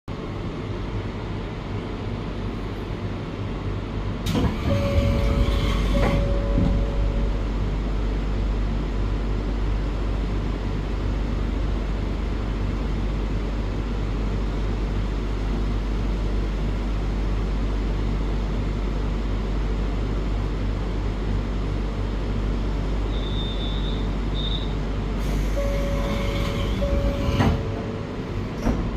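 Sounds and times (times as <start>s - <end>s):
train rumble: 0.1s - 28.9s
sliding door opening and closing: 4.3s - 7.0s, 25.2s - 28.9s
high beeps: 25.6s - 27.4s.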